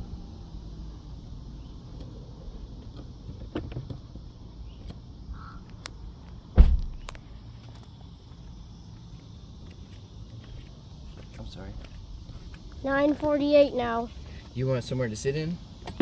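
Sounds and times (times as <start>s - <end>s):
low rumble of road traffic: 0.0s - 16.0s
sharp thump: 6.6s - 7.1s.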